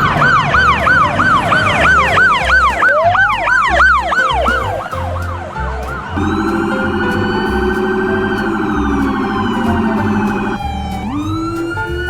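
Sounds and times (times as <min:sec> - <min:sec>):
electronic siren yelping: 0:00.0 - 0:11.0
steady electronic siren tone: 0:00.0 - 0:11.0.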